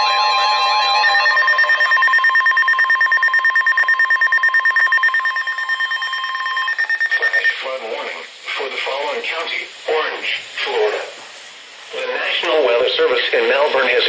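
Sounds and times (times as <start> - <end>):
pulsing two-tone beep: 1.0 - 7.6.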